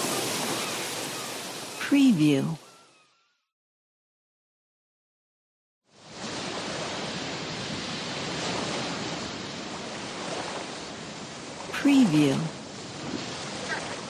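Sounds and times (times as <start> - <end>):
sea surf: 0.0 - 3.0, 5.9 - 14.0.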